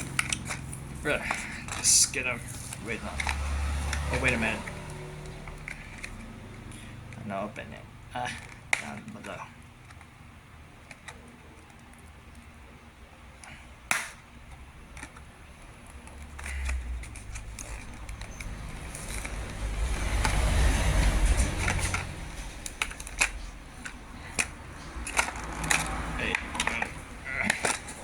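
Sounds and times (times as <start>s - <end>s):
packaging snapping: 0.0s - 7.3s, 8.2s - 10.2s, 13.4s - 28.0s
plastic packaging crackling: 0.0s - 7.5s, 14.4s - 28.0s.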